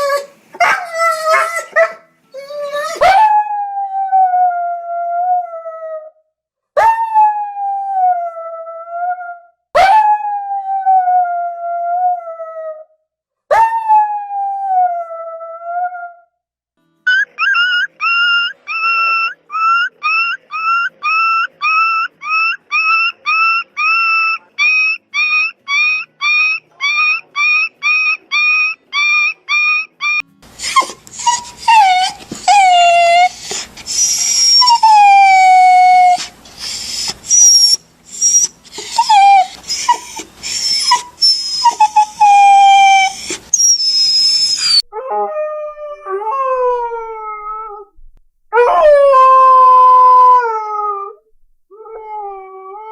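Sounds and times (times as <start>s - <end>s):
dog yelping and whining: 0.0s - 3.3s, 17.1s - 47.8s
dog whimpering: 17.1s - 44.9s
big dog whining low: 30.1s - 45.0s.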